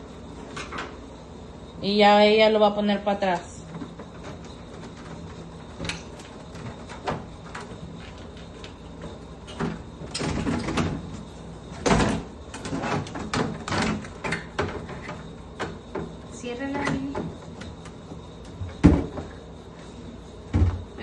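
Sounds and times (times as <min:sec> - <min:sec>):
refrigerator knocking and scraping: 0:03.7 - 0:19.4, 0:20.5 - 0:21.0.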